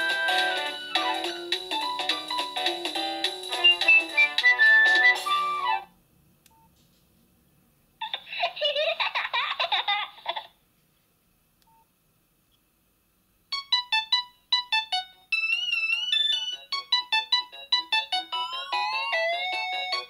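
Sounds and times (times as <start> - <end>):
polyphonic phone ringtone: 13.6 - 20.0.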